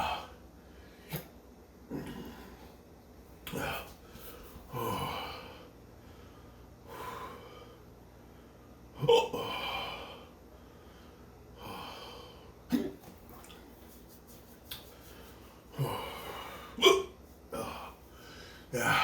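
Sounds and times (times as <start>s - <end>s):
man hiccuping: 9.0s - 9.5s, 12.7s - 13.1s, 16.8s - 17.7s
heavy breathing: 17.5s - 19.0s.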